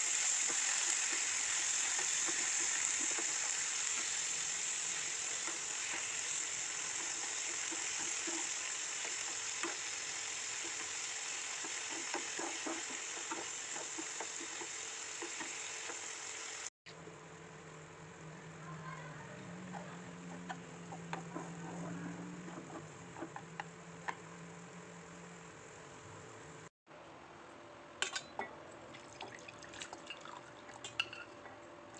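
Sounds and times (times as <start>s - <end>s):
food sizzling in a pan: 0.0s - 16.8s.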